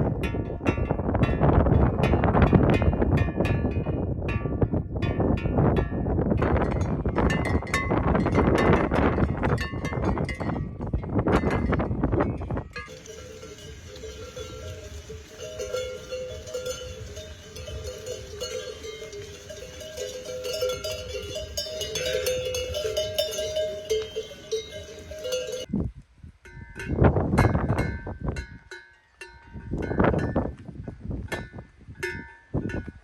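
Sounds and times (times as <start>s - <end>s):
livestock neck bells clanking: 0.0s - 25.7s.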